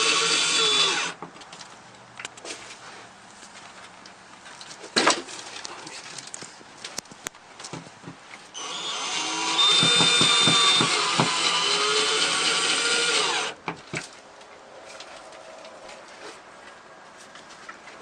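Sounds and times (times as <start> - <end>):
power drill running: 0.0 - 1.2, 8.6 - 13.6.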